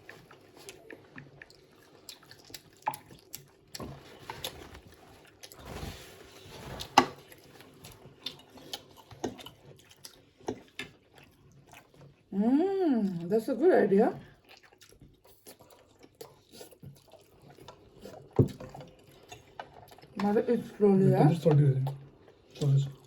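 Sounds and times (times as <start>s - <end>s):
chewing and slurping noodles: 0.0s - 12.3s, 14.2s - 20.2s.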